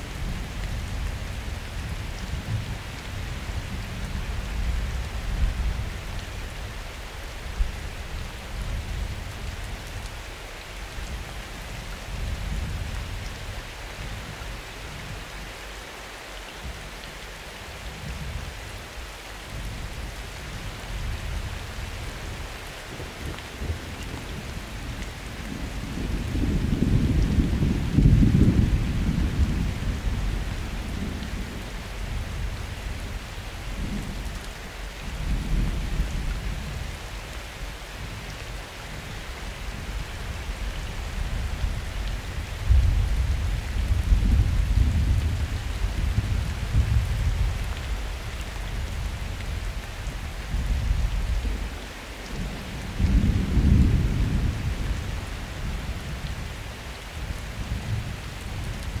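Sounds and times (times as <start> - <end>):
steady rain falling: 0.0 - 59.0
thunder rumbling: 25.4 - 32.3, 52.4 - 56.2.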